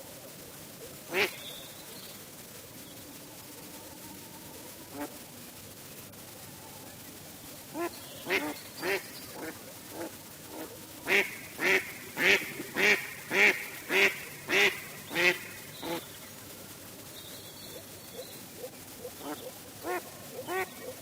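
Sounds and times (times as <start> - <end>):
duck quacking: 1.1 - 1.4, 7.7 - 16.1, 19.2 - 20.9.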